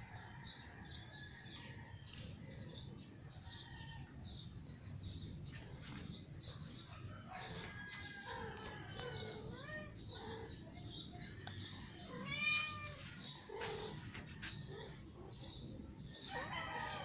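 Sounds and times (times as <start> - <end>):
cat meowing: 9.3 - 10.0, 12.1 - 13.2.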